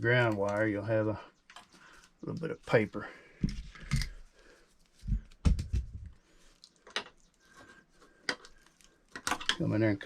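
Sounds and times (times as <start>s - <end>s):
cable being handled clicks: 8.2s - 9.7s.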